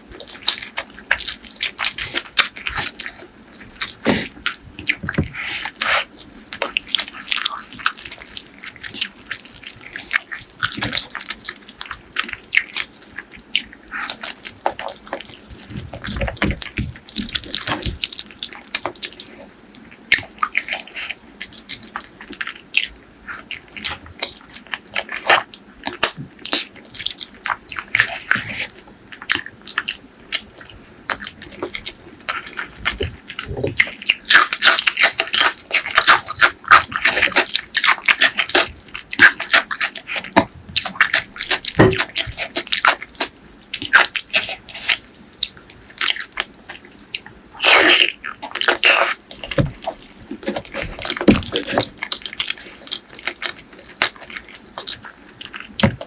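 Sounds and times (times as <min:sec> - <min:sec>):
wet chewing and lip smacking: 0:00.1 - 0:56.0.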